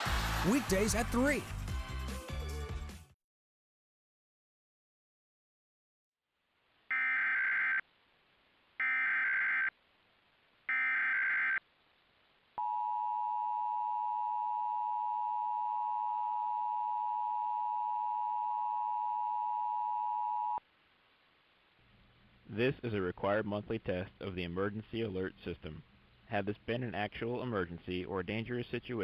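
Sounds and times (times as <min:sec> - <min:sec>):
screechy data modem tones: 0:06.9 - 0:07.8, 0:08.8 - 0:09.7, 0:10.7 - 0:11.6.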